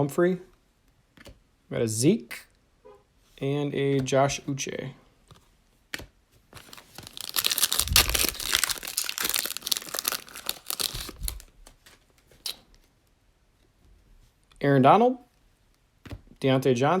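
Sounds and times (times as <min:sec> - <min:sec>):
plastic wrapper tearing and crinkling: 0:06.6 - 0:12.6.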